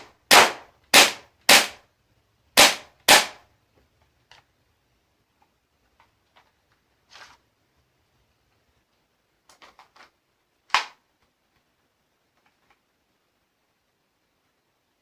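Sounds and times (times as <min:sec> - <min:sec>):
airsoft gun shots: 0:00.0 - 0:01.8, 0:02.6 - 0:03.4.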